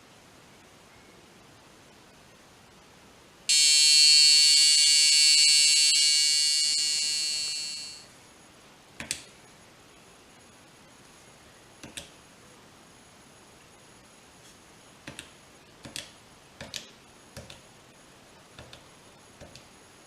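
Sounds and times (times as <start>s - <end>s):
shrill electronic buzzer alarm: 3.5s - 8.1s.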